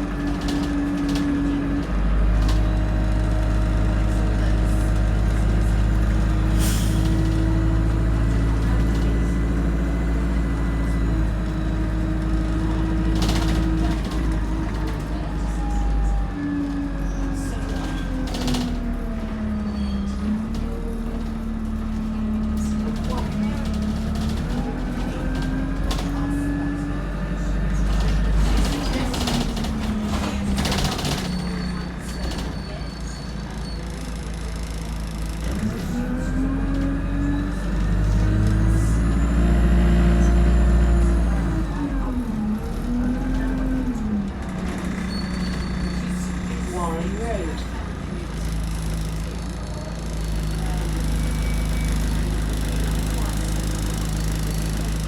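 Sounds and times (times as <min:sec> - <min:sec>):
bus engine rumble: 0:00.0 - 0:55.0.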